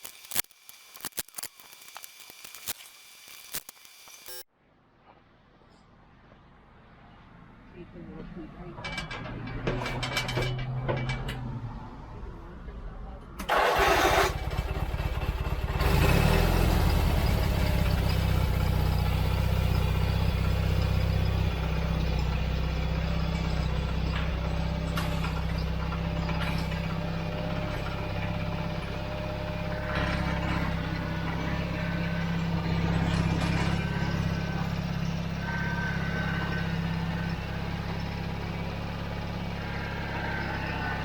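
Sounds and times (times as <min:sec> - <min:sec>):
mower engine running: 0:13.4 - 0:41.0
starter motor cranking: 0:13.4 - 0:41.0.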